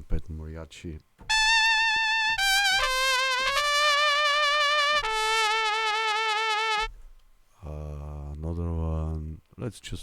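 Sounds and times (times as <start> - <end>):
sampled trumpet with vibrato: 1.3 - 7.0.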